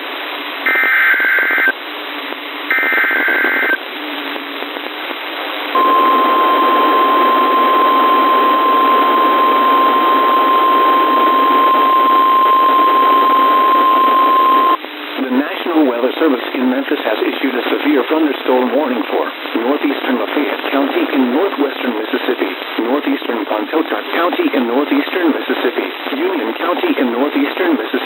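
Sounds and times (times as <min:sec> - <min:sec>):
steady warning alarm tone: 0:05.8 - 0:14.8
warbling digital data tones: 0:05.8 - 0:14.8
radio static: 0:05.8 - 0:15.3.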